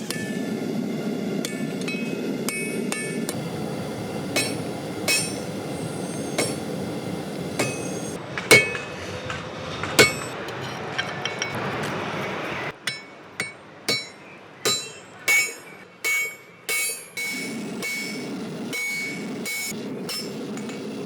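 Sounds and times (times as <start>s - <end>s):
steady rushing noise: 0.0s - 12.8s
hammer blows on hot iron: 1.4s - 21.0s.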